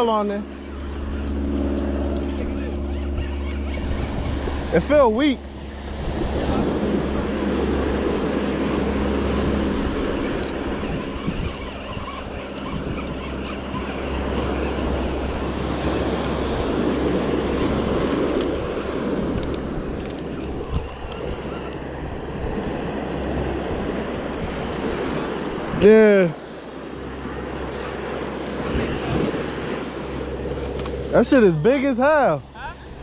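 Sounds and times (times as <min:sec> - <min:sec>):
wind rumbling on microphone: 0:00.0 - 0:33.0
surf washing onto beach: 0:04.2 - 0:10.9.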